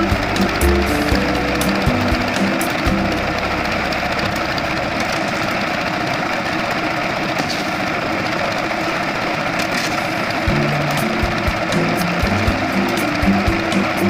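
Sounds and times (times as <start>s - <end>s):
low hum: 0.0s - 8.9s
construction machinery running: 0.0s - 14.0s.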